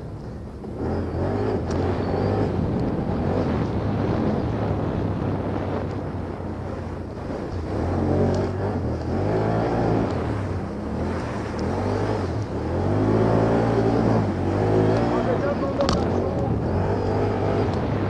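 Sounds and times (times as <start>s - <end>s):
quad bike engine revving: 0.0s - 18.0s.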